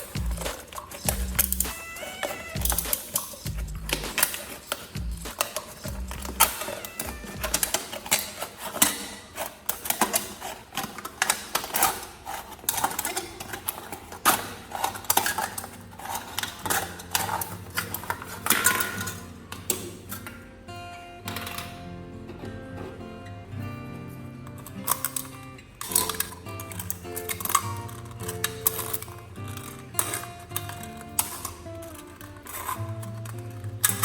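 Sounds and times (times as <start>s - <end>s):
background music: 0.0s - 9.0s, 16.4s - 34.0s
rapid clicking and tapping: 0.0s - 20.4s, 24.5s - 34.0s.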